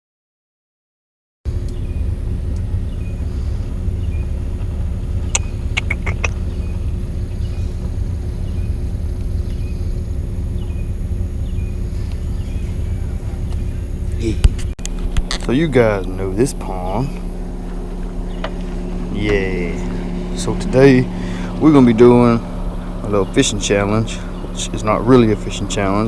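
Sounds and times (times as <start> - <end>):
faint constant hum: 1.5 - 26.0
low rumble: 1.5 - 26.0
sharp clicks: 5.2 - 6.9.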